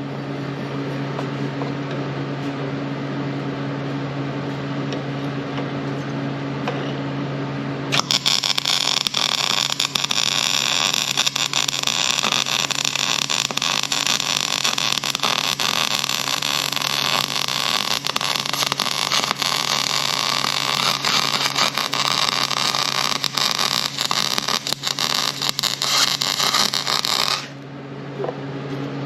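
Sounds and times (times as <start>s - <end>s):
welder arc crackling: 7.9s - 27.6s.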